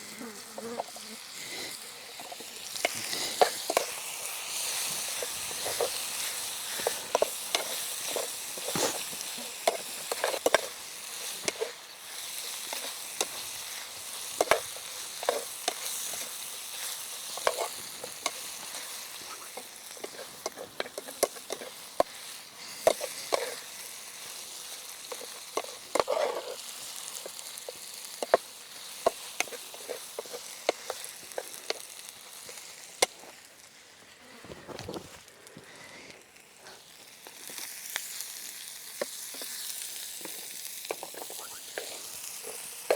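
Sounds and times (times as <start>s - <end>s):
food sizzling in a pan: 0.0s - 42.9s
utensil clicking and scraping: 1.7s - 24.0s, 24.6s - 33.2s.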